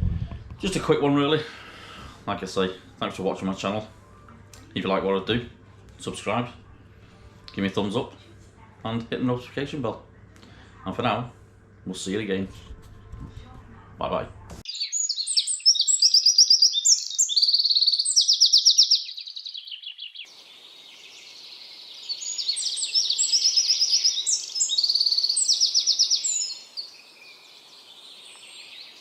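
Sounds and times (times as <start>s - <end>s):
songbird trilling: 14.7s - 27.6s.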